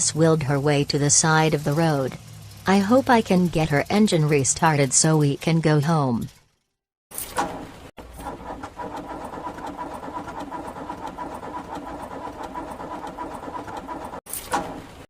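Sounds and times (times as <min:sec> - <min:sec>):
car engine cranking: 0:07.4 - 0:15.0.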